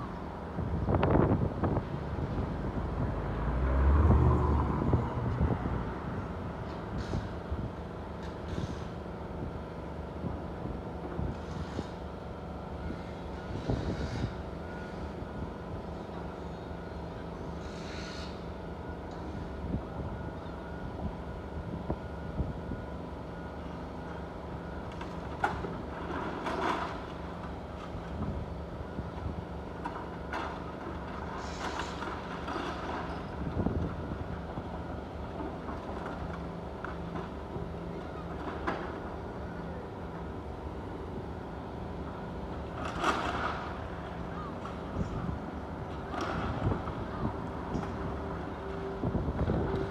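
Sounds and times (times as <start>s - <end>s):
demolition machine engine running: 18.7s - 49.9s.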